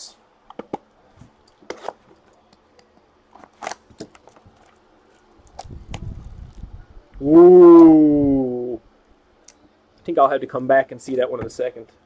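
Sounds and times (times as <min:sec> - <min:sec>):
cards and wrappers rustling: 0:03.3 - 0:06.7.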